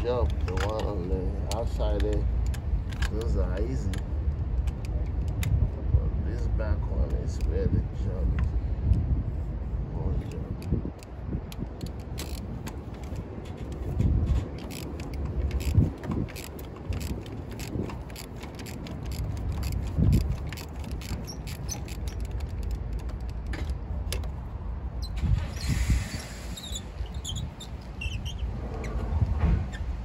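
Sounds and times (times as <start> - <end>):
hand tools clicking and knocking: 11.0 - 24.4
high squeaky chirping: 19.1 - 22.6, 26.4 - 30.0.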